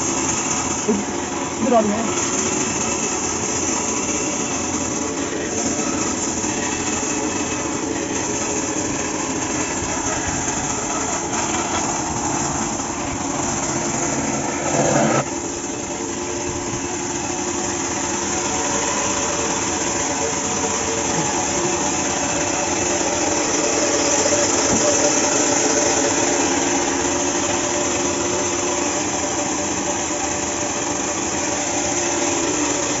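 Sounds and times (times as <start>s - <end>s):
bandsaw sawing wood: 0.0s - 33.0s.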